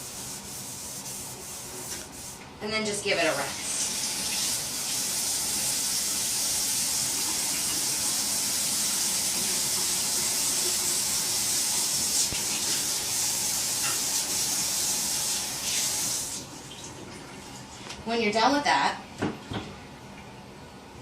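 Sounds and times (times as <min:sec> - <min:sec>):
tap water running into sink: 0:03.7 - 0:17.4.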